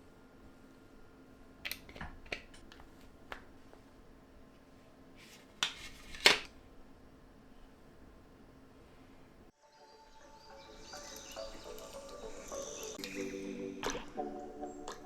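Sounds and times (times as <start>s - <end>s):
rustling scrapes: 4.7s - 6.4s.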